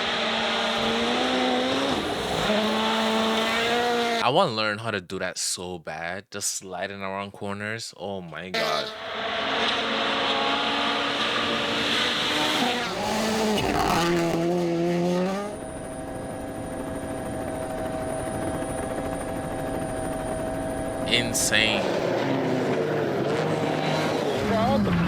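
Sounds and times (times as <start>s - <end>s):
rally car engine shifting gear: 0.0s - 4.2s, 9.5s - 15.7s.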